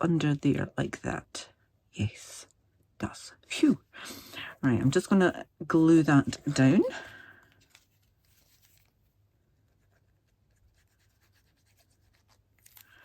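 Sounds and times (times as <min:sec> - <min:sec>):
paper rubbing and scratching: 0:07.7 - 0:13.0.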